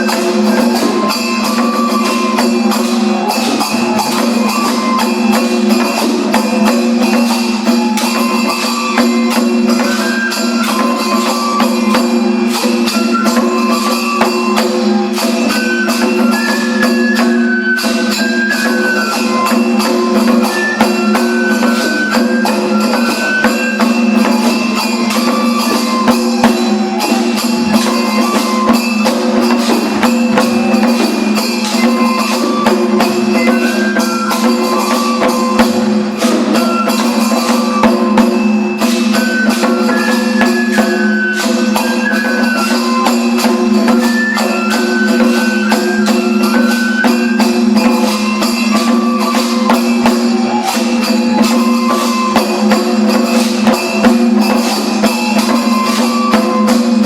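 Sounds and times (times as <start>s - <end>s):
high melody: 0.0s - 44.7s
fast percussion strikes: 0.0s - 57.0s.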